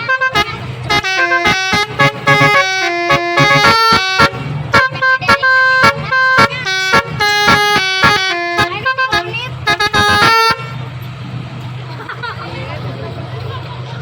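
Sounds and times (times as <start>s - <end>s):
musical air horn melody: 0.0s - 10.8s.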